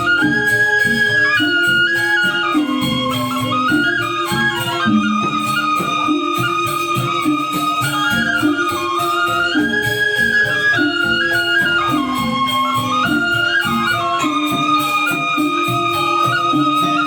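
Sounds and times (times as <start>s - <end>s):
gamelan gong-chimes playing: 0.0s - 17.0s
sustained high melody: 0.0s - 17.0s.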